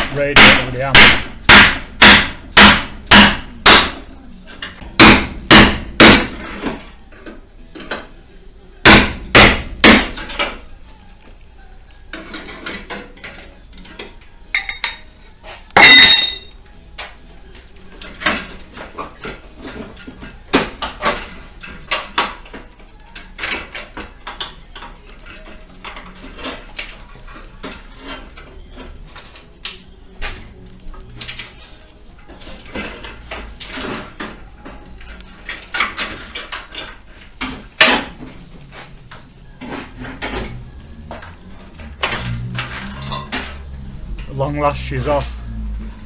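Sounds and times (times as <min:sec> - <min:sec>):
hammer and chisel on sheet steel: 0:00.0 - 0:04.0, 0:04.6 - 0:06.8, 0:15.8 - 0:16.6
ringing metallic clang: 0:15.8 - 0:16.8.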